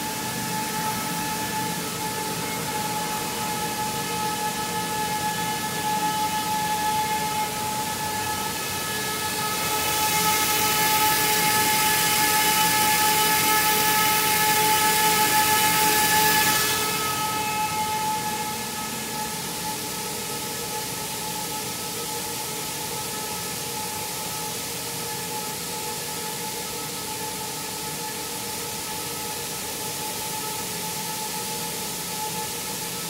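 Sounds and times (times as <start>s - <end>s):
rice milling machinery hiss: 0.0s - 33.0s
machinery whining tones: 0.1s - 22.5s.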